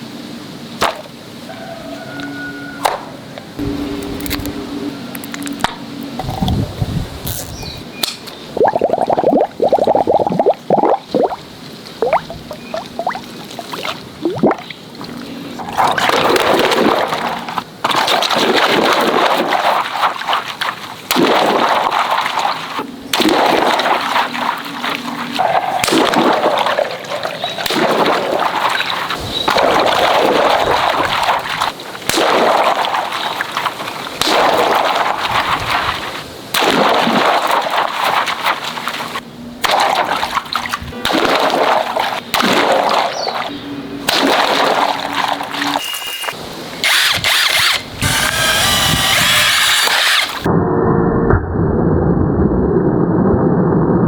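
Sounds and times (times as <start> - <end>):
water rushing and splashing: 8.5 - 45.8.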